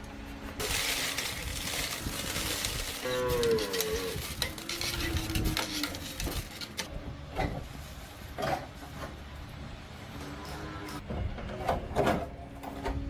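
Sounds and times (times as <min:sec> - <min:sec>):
metal scraping: 0:00.6 - 0:06.9.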